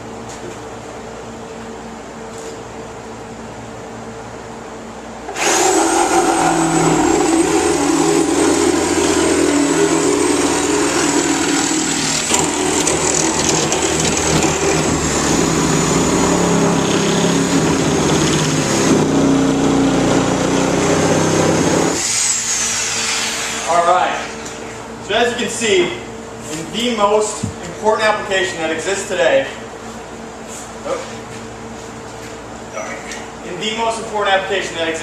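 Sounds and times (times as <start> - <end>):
power saw whining: 5.3 - 23.7.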